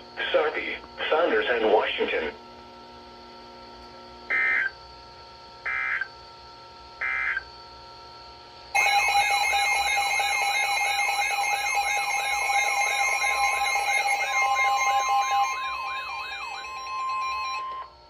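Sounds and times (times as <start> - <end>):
warbling alarm tone: 4.3 - 4.7, 5.7 - 6.1, 7.0 - 7.4, 8.8 - 18.0
electronic data screeches: 8.8 - 17.9.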